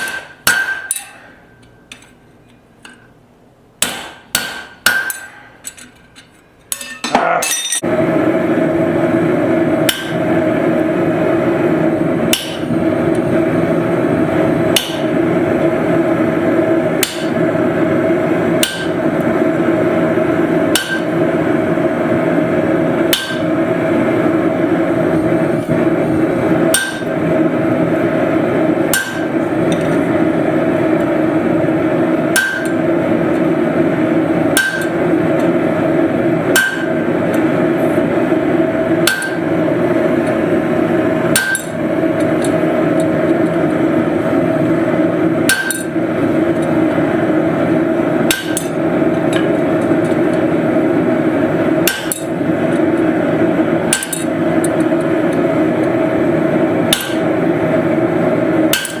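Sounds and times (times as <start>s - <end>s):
hammer striking punch through hot steel: 0.0s - 1.3s, 3.8s - 5.4s, 9.8s - 10.3s, 12.2s - 12.7s, 14.7s - 15.3s, 17.0s - 17.5s, 18.5s - 19.0s, 20.7s - 21.2s, 23.0s - 23.6s, 26.7s - 27.2s, 28.9s - 30.0s, 32.2s - 33.4s, 34.5s - 35.5s, 36.4s - 37.1s, 39.0s - 39.6s, 41.3s - 41.8s, 45.4s - 46.0s, 48.2s - 49.6s, 51.8s - 52.3s, 53.9s - 54.3s, 56.8s - 57.4s, 58.7s - 59.0s
loud steady drone: 7.4s - 59.0s.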